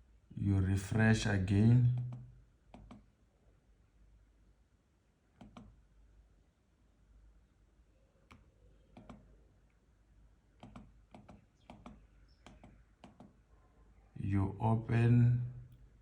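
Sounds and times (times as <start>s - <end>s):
computer mouse clicks: 1.9s - 3.1s, 5.4s - 5.8s, 8.2s - 9.3s, 10.6s - 13.4s.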